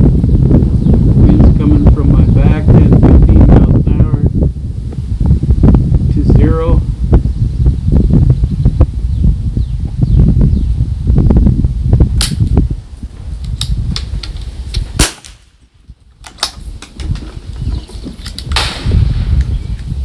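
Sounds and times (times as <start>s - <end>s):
wind buffeting microphone: 0.0s - 20.0s
rifle shot crack: 15.0s - 15.6s, 18.5s - 19.5s.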